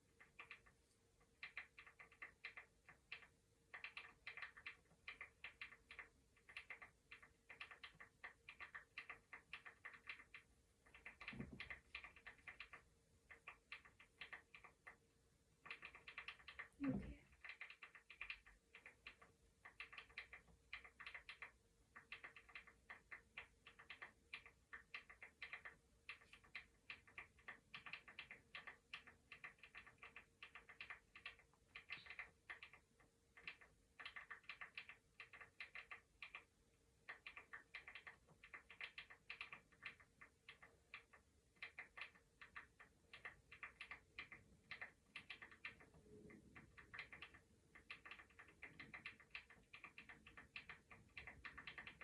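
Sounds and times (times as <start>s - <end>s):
keyboard key clicks: 15.6s - 52.0s.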